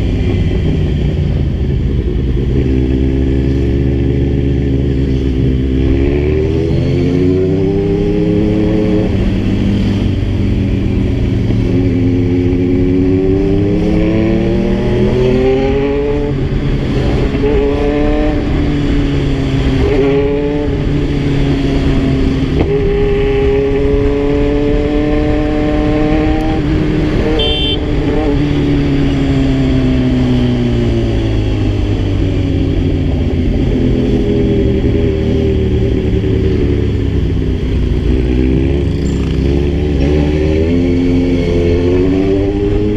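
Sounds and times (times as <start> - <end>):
motorcycle engine shifting gears: 0.0 - 42.9
short high beep: 27.2 - 27.8.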